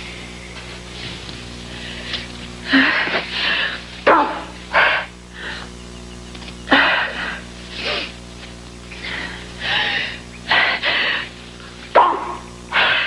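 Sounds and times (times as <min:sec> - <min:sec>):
wheezy breaths: 0:08.9 - 0:11.8.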